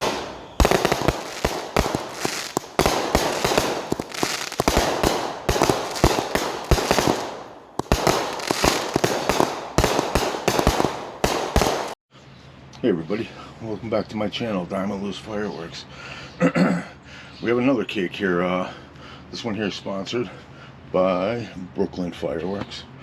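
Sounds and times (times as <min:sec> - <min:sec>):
fireworks bangs: 0:00.0 - 0:12.0
fireworks crackling: 0:00.0 - 0:12.0.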